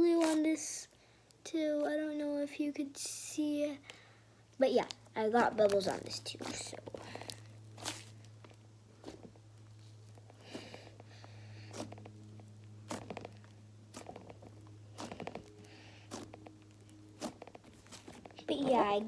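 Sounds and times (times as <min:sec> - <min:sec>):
slime squeezing with sticky clicks: 0:00.1 - 0:00.4, 0:04.8 - 0:18.3.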